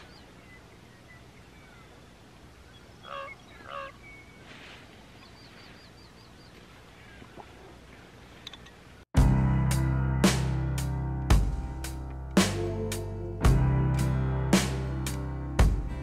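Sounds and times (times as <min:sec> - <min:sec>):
crow cawing: 0:03.0 - 0:04.0.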